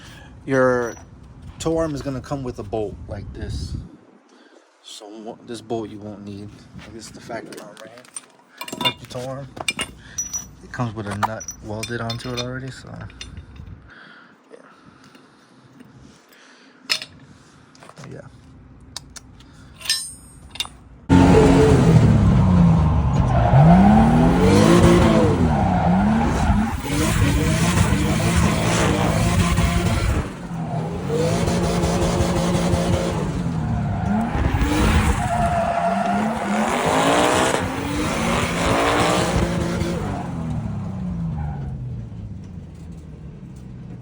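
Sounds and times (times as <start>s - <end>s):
car engine revving: 21.1s - 43.8s
tyre squeal: 21.2s - 41.8s.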